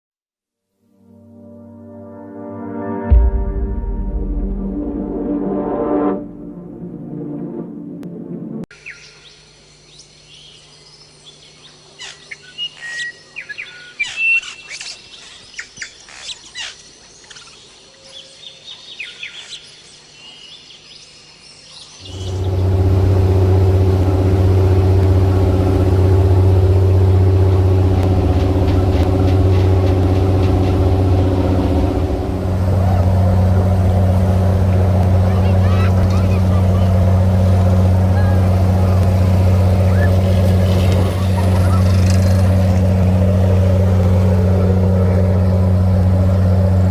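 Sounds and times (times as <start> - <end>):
birds chirping: 22.0 - 46.9
boat engine droning: 22.0 - 46.9.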